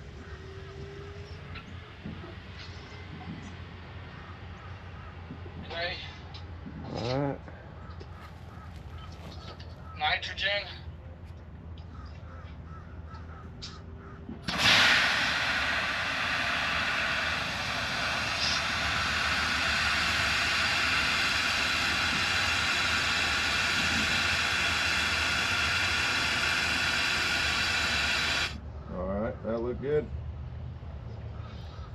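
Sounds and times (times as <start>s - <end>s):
gas hissing through a pipe: 14.4s - 28.6s.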